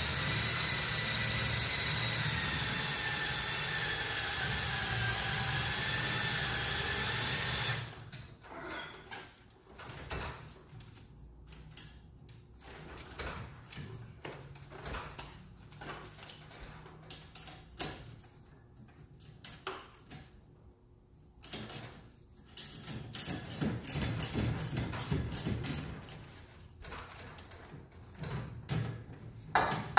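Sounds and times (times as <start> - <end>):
metal tools clicking and clanking: 21.4 - 28.9.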